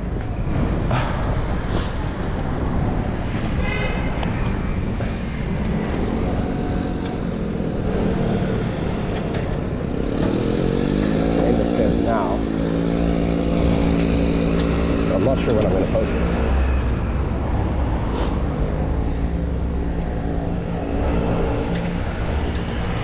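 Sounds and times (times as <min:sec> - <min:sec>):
wind and road noise: 0:00.0 - 0:23.0
vehicle engine speeding up: 0:05.6 - 0:23.0.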